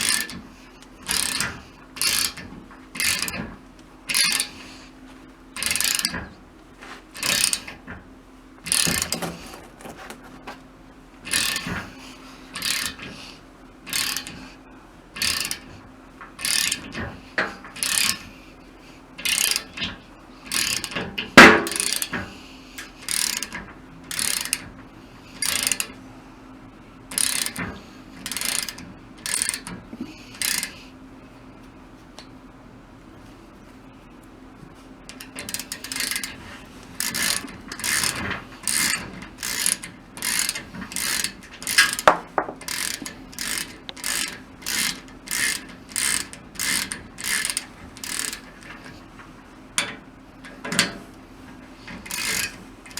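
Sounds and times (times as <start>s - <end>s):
ratchet wrench clicking: 0.0s - 0.4s, 1.0s - 2.4s, 3.0s - 3.4s, 4.1s - 4.5s, 5.6s - 6.1s, 7.2s - 7.7s, 8.7s - 9.9s, 11.3s - 11.7s, 12.6s - 13.1s, 13.9s - 14.4s, 15.2s - 15.7s, 16.4s - 16.9s, 17.8s - 18.2s, 19.2s - 19.7s, 20.5s - 22.2s, 22.8s - 24.6s, 25.4s - 25.9s, 27.1s - 27.6s, 28.2s - 29.7s, 30.4s - 30.8s, 35.1s - 36.4s, 37.0s - 48.5s, 52.1s - 52.9s.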